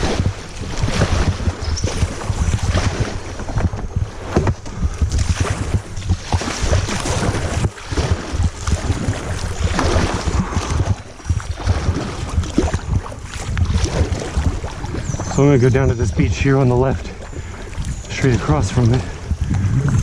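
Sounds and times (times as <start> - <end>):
wind buffeting microphone: 0.0 - 20.0
river water flowing: 4.2 - 20.0.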